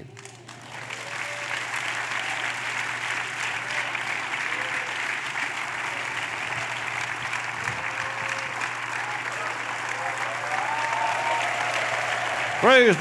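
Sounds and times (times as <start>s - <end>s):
crowd applauding: 0.0s - 13.0s
faint voices calling out: 0.0s - 13.0s.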